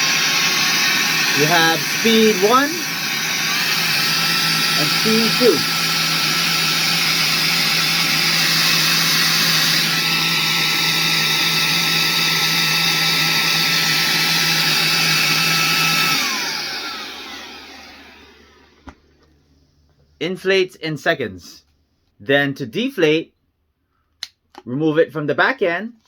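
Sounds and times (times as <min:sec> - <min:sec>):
vacuum motor whining: 0:00.0 - 0:19.1.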